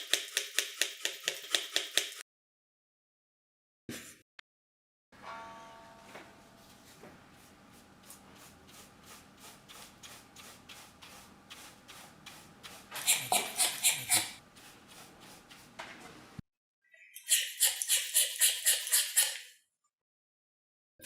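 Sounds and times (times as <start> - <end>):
cleaning strokes in concrete hole: 7.4 - 15.7, 17.3 - 19.5.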